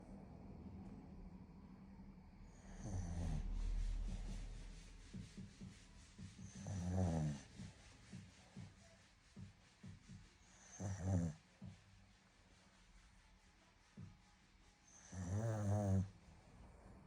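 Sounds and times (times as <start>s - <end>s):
dog snoring: 2.4s - 4.4s, 6.4s - 7.7s, 10.4s - 11.4s, 14.9s - 16.2s
soft dog breaths: 2.4s - 17.0s.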